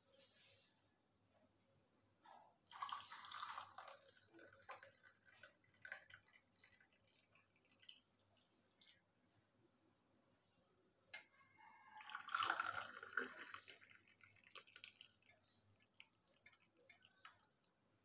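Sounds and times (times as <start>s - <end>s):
liquid dripping: 2.6s - 9.2s, 11.9s - 17.8s
hot liquid pouring into cup: 2.7s - 9.1s, 11.9s - 17.7s.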